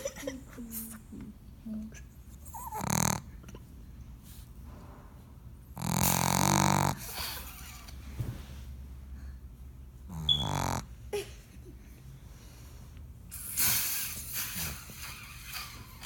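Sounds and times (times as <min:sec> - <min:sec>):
dog snoring: 0:02.4 - 0:03.4, 0:05.7 - 0:07.2, 0:10.1 - 0:11.0.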